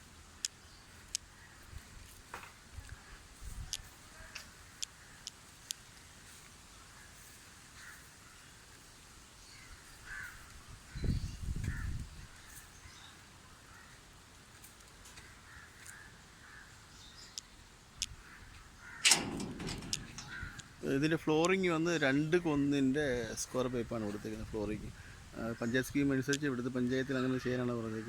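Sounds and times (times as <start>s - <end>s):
faint crows cawing: 0.6s - 6.1s, 6.7s - 28.0s
sharp clicks: 19.0s - 21.6s.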